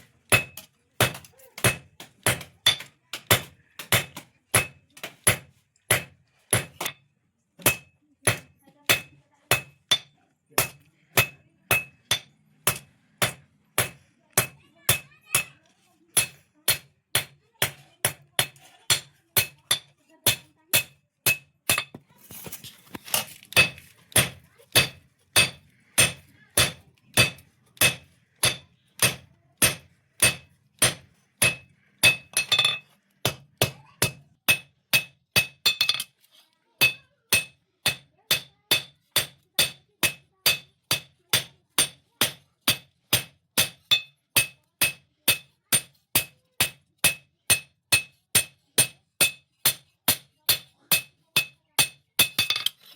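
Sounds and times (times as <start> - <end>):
hammer striking blade on anvil: 7.6 - 15.5, 23.5 - 36.1, 36.8 - 52.9.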